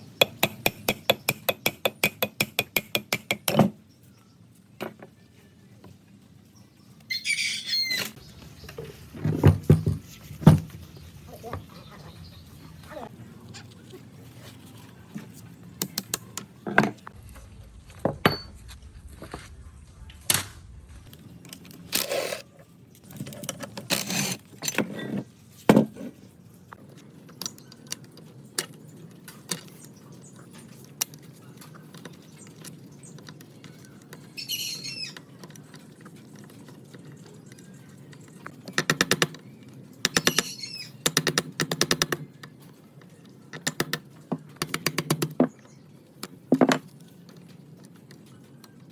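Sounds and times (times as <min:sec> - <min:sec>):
tools knocking on workbench: 0:46.5 - 0:46.8.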